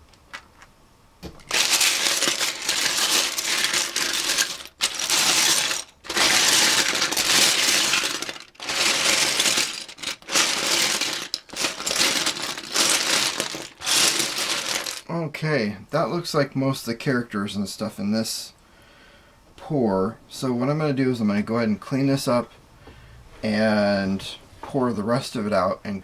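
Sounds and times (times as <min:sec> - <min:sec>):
plastic bricks clattering: 0:01.3 - 0:15.1.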